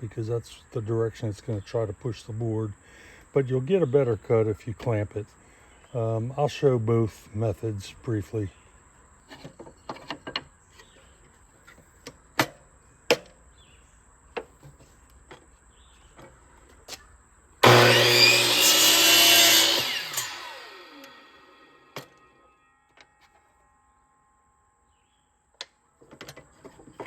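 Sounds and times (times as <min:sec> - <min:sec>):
saw motor winding down: 0:17.6 - 0:22.0
miter saw cutting wood: 0:17.6 - 0:22.2.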